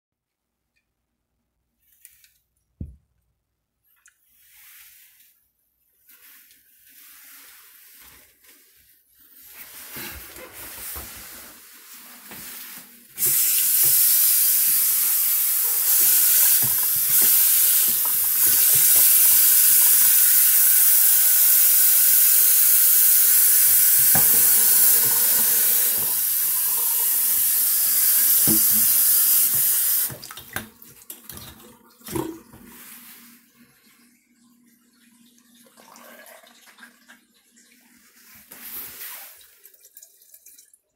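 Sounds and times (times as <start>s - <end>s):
water running from faucet: 13.2s - 33.2s.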